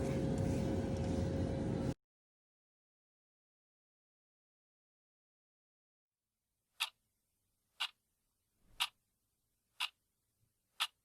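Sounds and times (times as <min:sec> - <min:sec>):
clock ticking: 0:07.8 - 0:08.0, 0:08.8 - 0:09.0, 0:09.8 - 0:10.0, 0:10.8 - 0:11.0.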